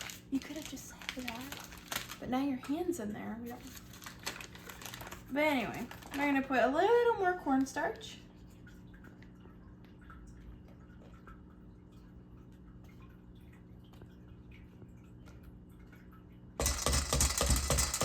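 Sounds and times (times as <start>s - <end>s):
packaging crackling and clattering: 0.0s - 2.2s, 3.6s - 6.2s, 16.6s - 18.0s
low steady hum: 0.0s - 18.0s.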